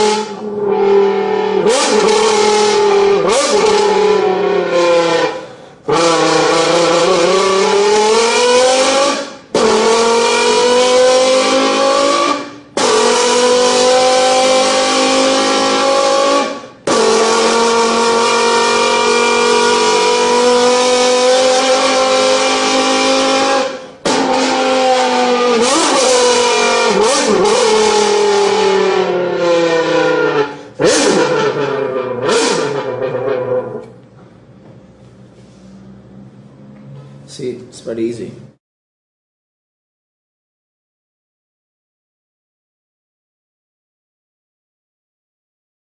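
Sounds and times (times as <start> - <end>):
buzzy notes blown on a bottle: 0.0 - 31.4.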